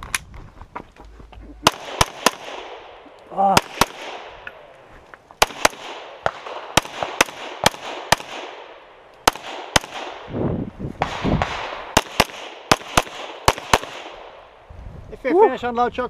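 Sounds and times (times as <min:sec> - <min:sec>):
pistol shots echoing: 0:01.6 - 0:04.8, 0:05.4 - 0:10.3, 0:11.0 - 0:14.6.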